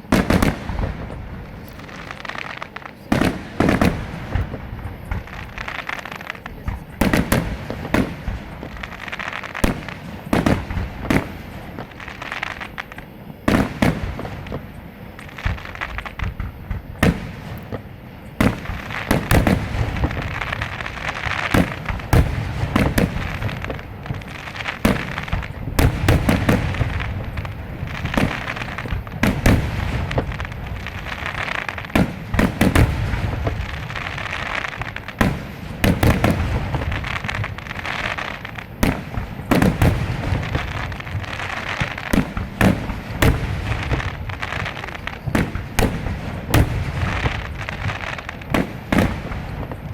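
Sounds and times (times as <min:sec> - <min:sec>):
fireworks bursts and booms: 0:00.0 - 0:49.9
fireworks crackling: 0:00.0 - 0:49.9.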